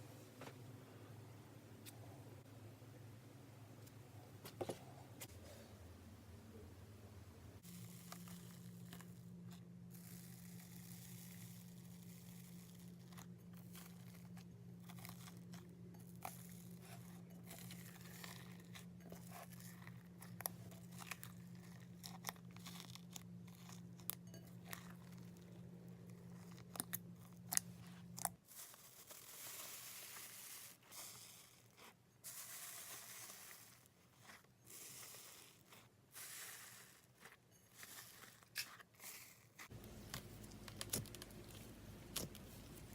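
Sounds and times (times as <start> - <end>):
sharp clicks and pops: 39.8 - 42.4.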